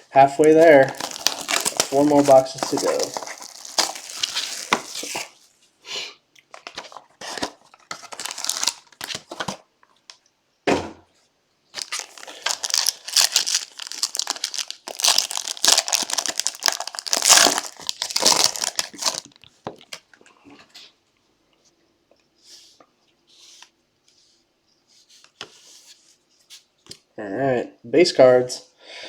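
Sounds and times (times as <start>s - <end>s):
plastic wrapping crinkling: 0.2s - 5.6s, 6.5s - 9.7s, 11.7s - 20.2s.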